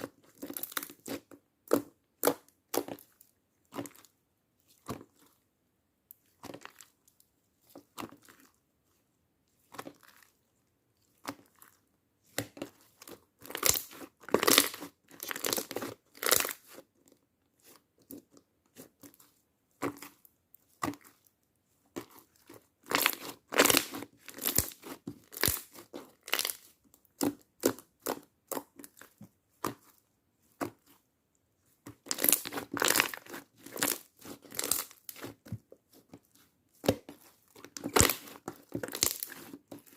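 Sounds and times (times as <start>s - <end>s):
slime crackling and popping: 13.4s - 16.8s, 22.8s - 29.8s, 31.8s - 36.0s, 36.8s - 39.9s.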